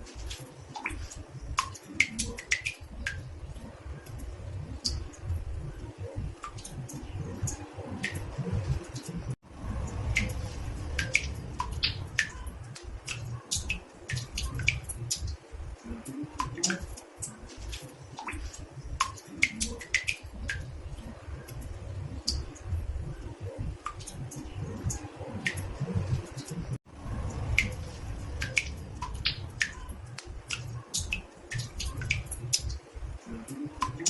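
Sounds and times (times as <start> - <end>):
water drops plinking in bathtub: 0.2 - 26.6, 27.2 - 34.0
low steady rumble: 3.0 - 15.8, 20.4 - 33.8.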